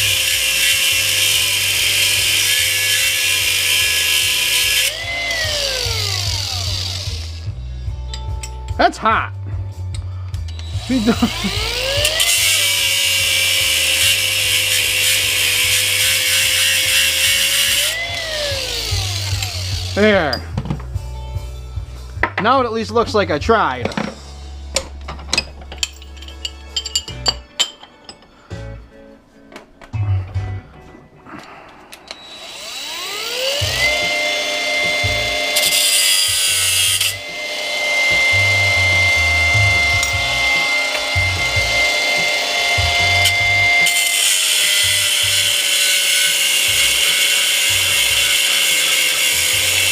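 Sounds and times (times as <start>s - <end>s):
power tool cutting metal: 0.0s - 7.6s, 10.5s - 20.4s, 32.0s - 49.9s.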